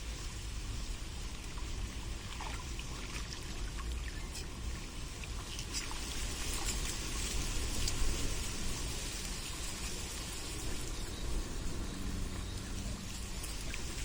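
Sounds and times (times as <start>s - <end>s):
water trickling: 1.1s - 14.0s
low rumble: 8.3s - 14.0s.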